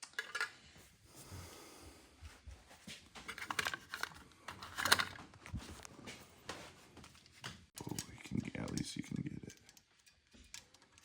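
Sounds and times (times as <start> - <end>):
light clicks and rustling: 3.2 - 11.0.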